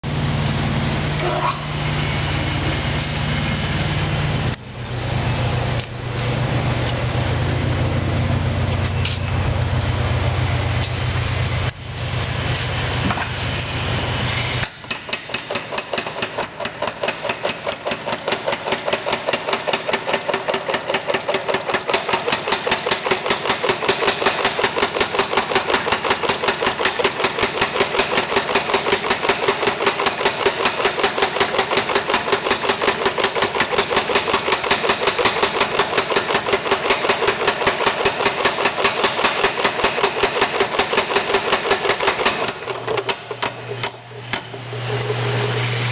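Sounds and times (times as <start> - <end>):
machine running: 0.0 - 45.9
power hammer pounding metal: 14.8 - 44.5.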